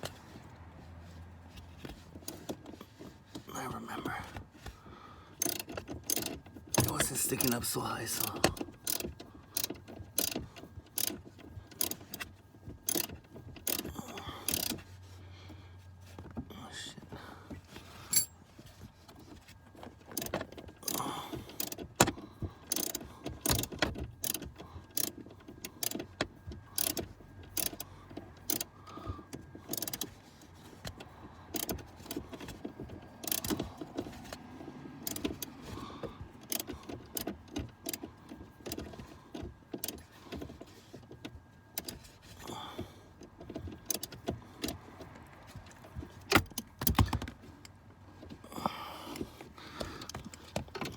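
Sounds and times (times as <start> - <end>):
hand tools and parts clattering: 18.0 - 18.7.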